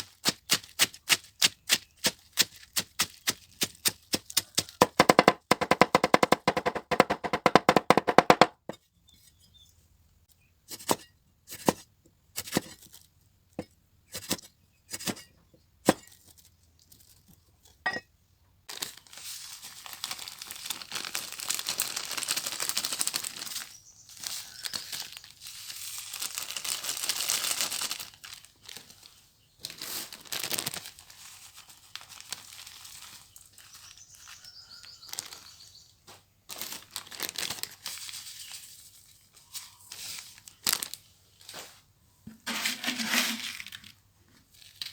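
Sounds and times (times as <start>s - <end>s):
knife chopping on cutting board: 4.2s - 8.6s
crinkling rustling noise: 16.0s - 17.7s, 18.7s - 44.9s.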